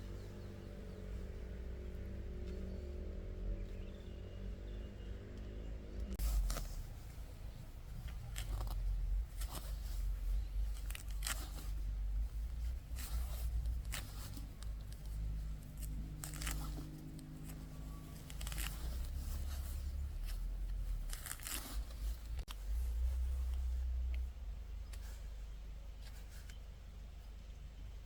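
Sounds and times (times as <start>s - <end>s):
low rumble: 0.0s - 26.0s
sharp tearing sounds: 8.0s - 22.5s.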